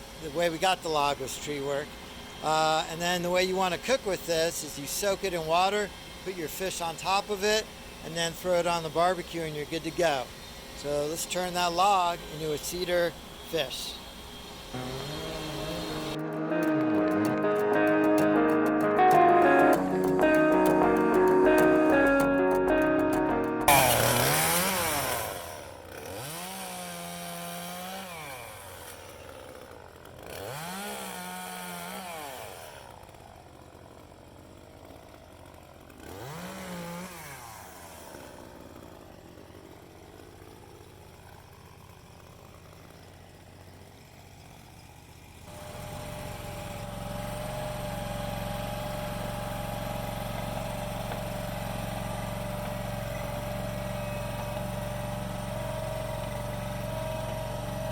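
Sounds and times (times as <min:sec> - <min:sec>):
chainsaw revving: 0:00.0 - 0:57.9
engine with high whine: 0:13.2 - 0:16.7, 0:43.5 - 0:57.9.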